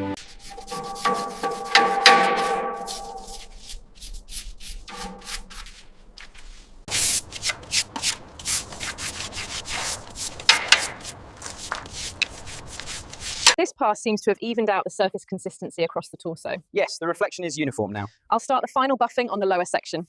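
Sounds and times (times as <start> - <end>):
sanding on iron surface: 0.2 - 13.6.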